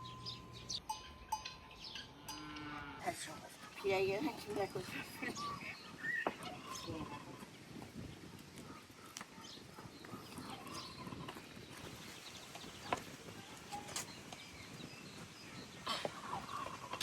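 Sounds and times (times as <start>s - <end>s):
chickens clucking: 3.5s - 14.8s, 15.4s - 17.0s.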